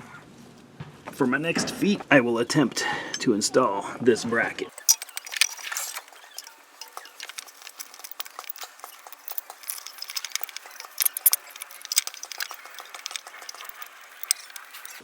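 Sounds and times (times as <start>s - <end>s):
metal parts and tools clinking: 4.7s - 15.0s.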